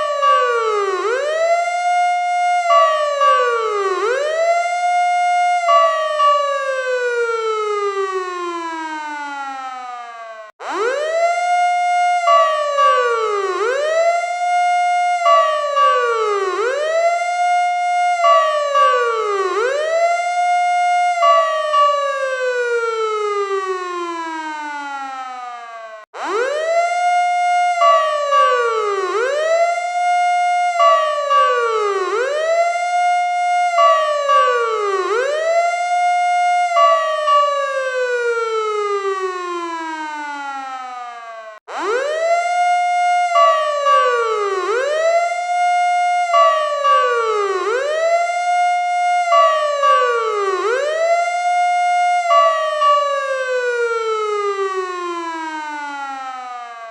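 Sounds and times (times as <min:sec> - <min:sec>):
fire truck siren wailing: 0:00.0 - 0:56.9.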